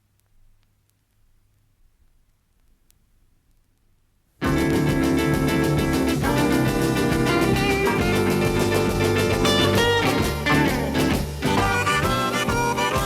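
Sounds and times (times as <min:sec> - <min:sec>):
instrumental blues music: 0:04.4 - 0:13.0.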